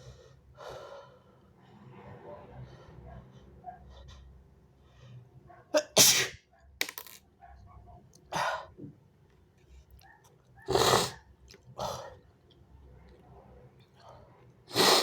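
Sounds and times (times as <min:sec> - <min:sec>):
person sneezing: 0:05.8 - 0:06.4, 0:14.7 - 0:15.0.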